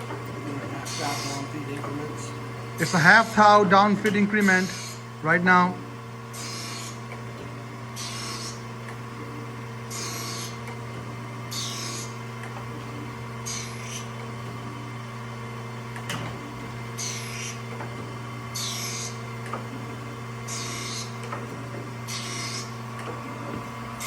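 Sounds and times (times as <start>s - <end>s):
grinder spindle humming: 0.0s - 24.0s
grinding wheel hissing: 0.7s - 5.1s, 6.3s - 7.0s, 8.0s - 8.6s, 9.9s - 10.6s, 11.5s - 12.2s, 17.0s - 17.6s, 18.6s - 19.2s, 20.5s - 21.1s, 22.1s - 22.7s.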